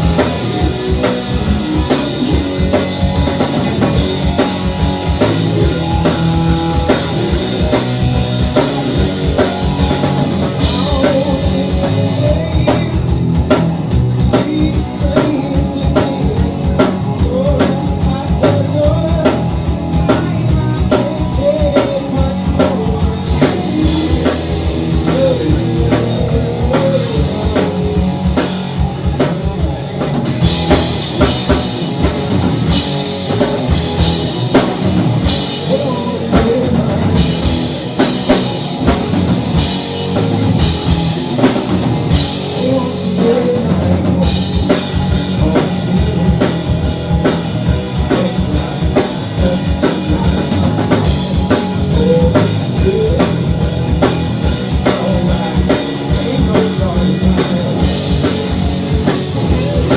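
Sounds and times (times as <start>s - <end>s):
drum kit beat: 0.0s - 59.9s
electric guitar: 0.0s - 59.9s
rock band playing: 0.0s - 59.9s.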